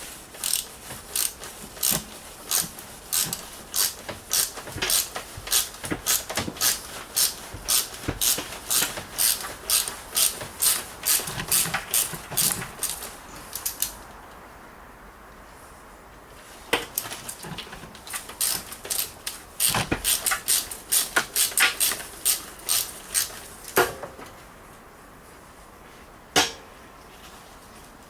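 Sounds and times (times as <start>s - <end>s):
ratchet wrench clicking: 0.4s - 13.9s, 18.1s - 23.4s.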